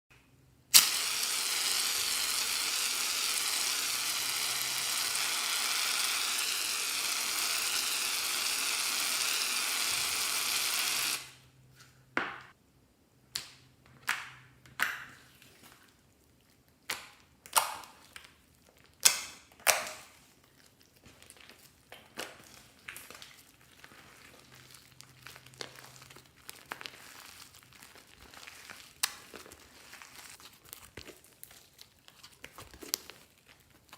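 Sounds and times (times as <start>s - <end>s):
soft crinkling: 20.1s - 33.9s.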